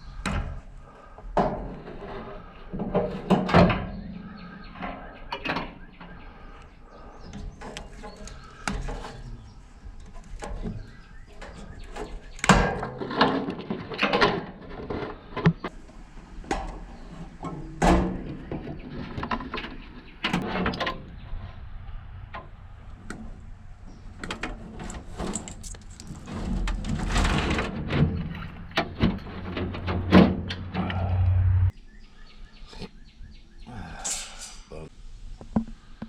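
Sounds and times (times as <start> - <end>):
scrap metal knocks and clatter: 1.4 - 6.2, 7.0 - 15.7, 16.5 - 21.2, 23.9 - 31.0.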